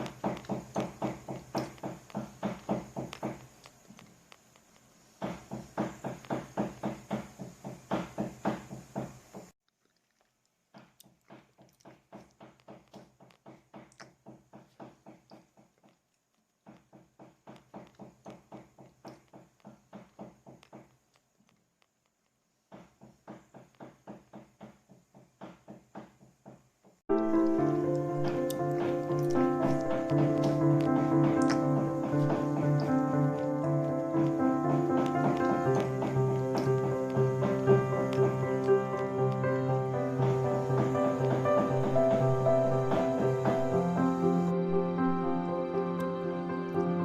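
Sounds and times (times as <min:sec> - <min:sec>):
cleaver chopping on wooden board: 0:00.0 - 0:03.4.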